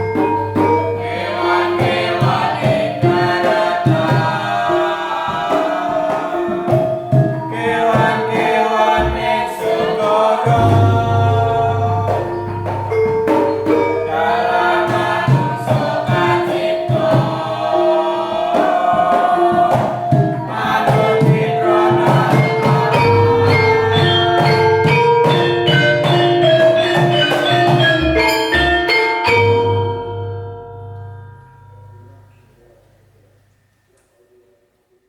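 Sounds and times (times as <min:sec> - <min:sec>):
metallophones ringing melody: 0:00.0 - 0:33.6
choir singing: 0:00.8 - 0:24.9
deep gong tones: 0:10.5 - 0:16.0.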